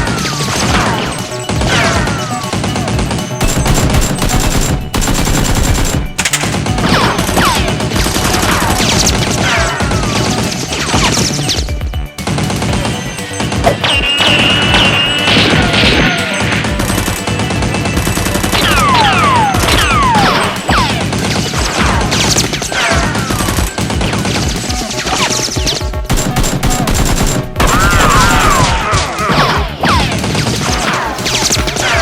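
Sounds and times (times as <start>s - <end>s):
background music: 0.0s - 32.0s
machine gun bursts: 0.4s - 9.4s, 14.2s - 28.6s.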